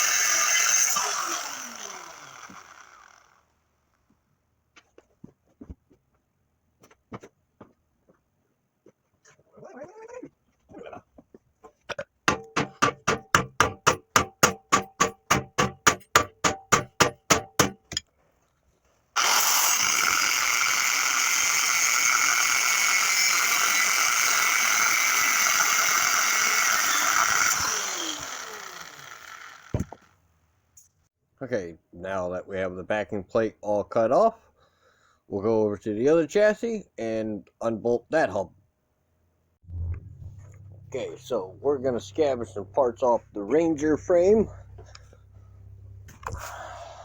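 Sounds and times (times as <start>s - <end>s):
angle grinder cutting steel: 0.0s - 3.4s, 19.2s - 30.0s
sharp knocks: 12.2s - 18.0s.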